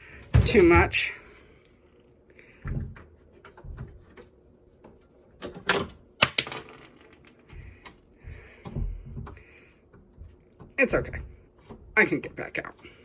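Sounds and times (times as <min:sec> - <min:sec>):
door being handled: 0:00.1 - 0:01.1.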